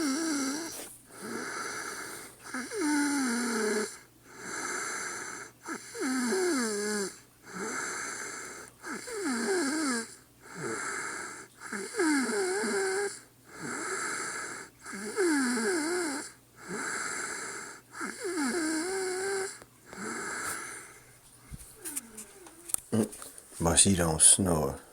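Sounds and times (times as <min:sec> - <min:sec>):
woman snoring: 0:00.0 - 0:21.0
breathy hiss: 0:00.0 - 0:24.9.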